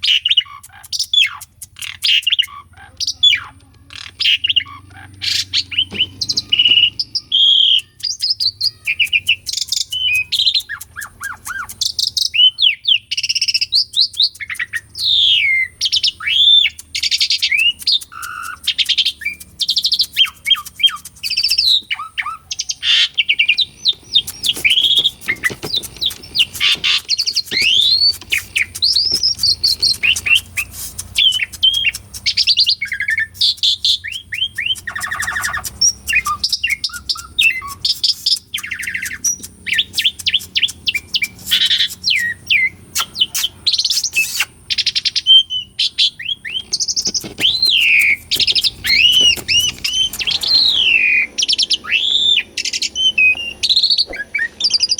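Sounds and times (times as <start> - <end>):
starling singing varied song: 0.0 - 54.9.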